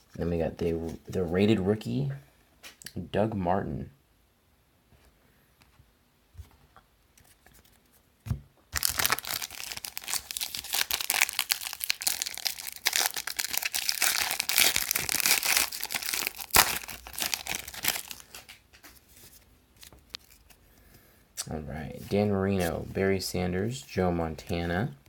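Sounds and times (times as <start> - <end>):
foil wrapper crinkling: 8.8 - 20.6.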